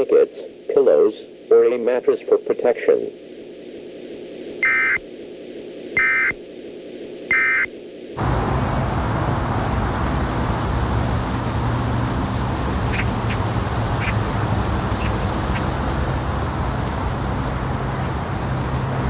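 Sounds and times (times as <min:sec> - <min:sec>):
static hiss with low hum: 0:00.0 - 0:19.0
warbling data bursts: 0:04.3 - 0:08.9, 0:11.8 - 0:19.0.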